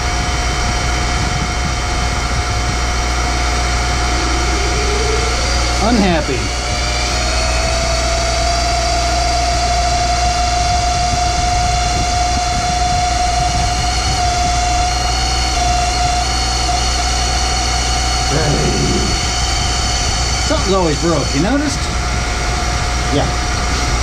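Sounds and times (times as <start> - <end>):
surface grinder whining: 17.9 - 21.3.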